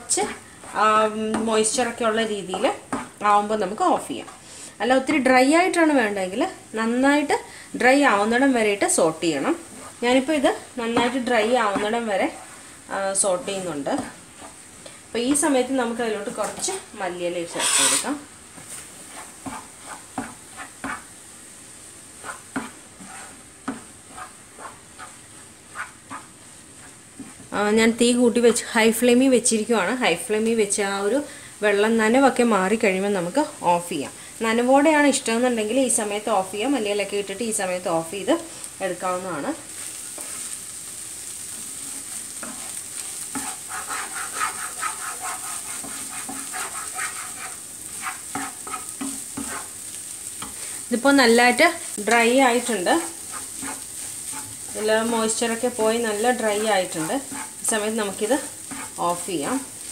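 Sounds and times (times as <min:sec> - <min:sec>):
spatula scraping frying pan: 0:00.0 - 0:04.8, 0:09.0 - 0:21.3, 0:22.0 - 0:27.6, 0:38.4 - 0:59.9
faint sizzle: 0:00.0 - 0:59.9.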